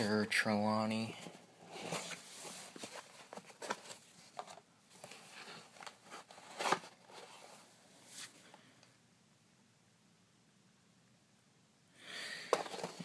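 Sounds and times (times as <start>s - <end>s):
packaging crinkles and scrapes: 1.7s - 8.4s.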